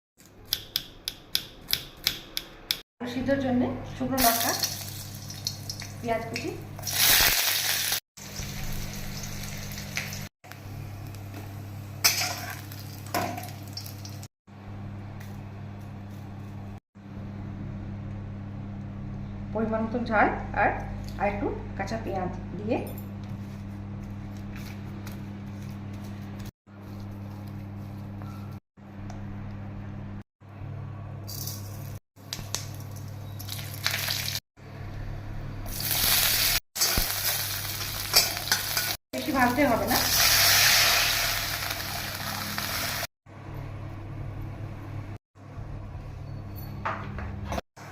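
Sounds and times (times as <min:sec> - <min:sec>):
food sizzling in oil: 0:04.2 - 0:06.1, 0:06.8 - 0:10.3, 0:12.0 - 0:14.3, 0:32.6 - 0:34.4, 0:35.7 - 0:43.1.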